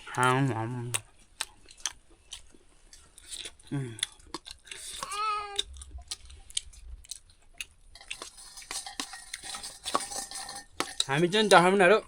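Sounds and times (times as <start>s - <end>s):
clicks and taps of eating: 0.2s - 11.8s
cat meowing: 5.0s - 5.7s.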